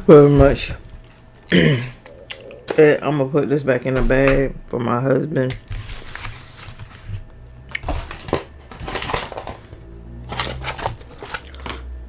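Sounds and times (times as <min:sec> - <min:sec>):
paper bag and wrappers rustling: 0:05.4 - 0:12.0.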